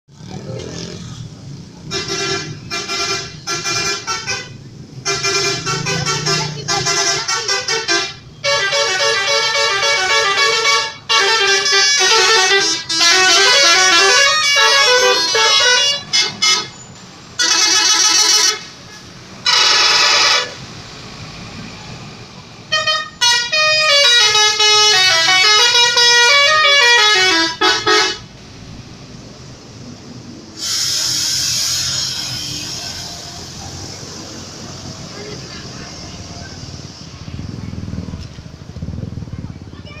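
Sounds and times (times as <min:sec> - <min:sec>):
multi-tone bus horns melodies: 0:01.8 - 0:20.7, 0:22.7 - 0:28.4, 0:30.6 - 0:34.0
loud rush of noise: 0:28.2 - 0:40.0.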